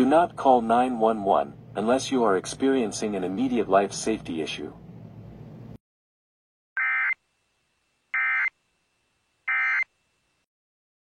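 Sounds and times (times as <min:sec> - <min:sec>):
alert data tone bursts: 0:06.8 - 0:07.2, 0:08.2 - 0:08.5, 0:09.5 - 0:09.9.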